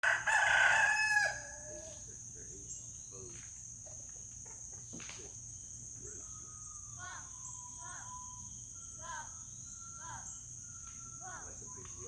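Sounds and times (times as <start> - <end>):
rooster crowing: 0.0 - 2.0
high cricket trill: 0.0 - 12.0.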